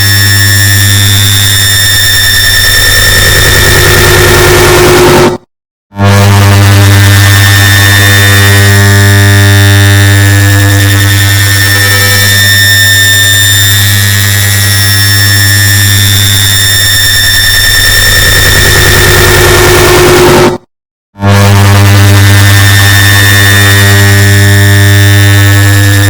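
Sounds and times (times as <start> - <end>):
distorted electric drone: 0.0 - 5.4, 6.0 - 26.0
low hum with high whine: 21.4 - 26.0.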